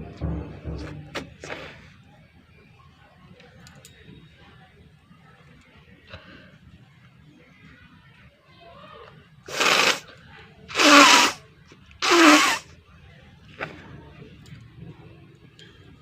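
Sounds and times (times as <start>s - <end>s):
person blowing nose: 9.5s - 10.0s, 10.7s - 11.4s, 12.0s - 12.7s.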